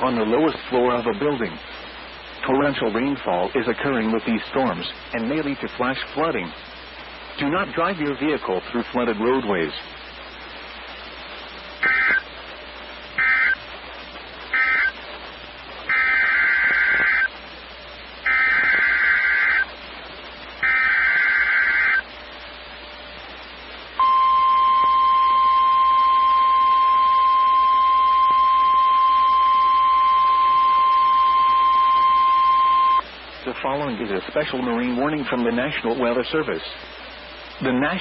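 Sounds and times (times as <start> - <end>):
buzzy data bursts: 11.5 - 12.3, 12.9 - 13.7, 14.4 - 15.0, 15.7 - 19.8, 20.5 - 22.2
steady alarm tone: 11.8 - 12.3, 13.1 - 13.6, 14.5 - 15.0, 15.9 - 17.3, 18.2 - 19.7, 20.6 - 22.1, 24.0 - 33.0.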